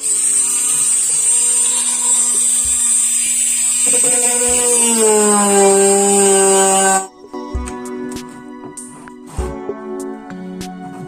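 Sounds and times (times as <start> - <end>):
electric drill whining: 0.0 - 7.1.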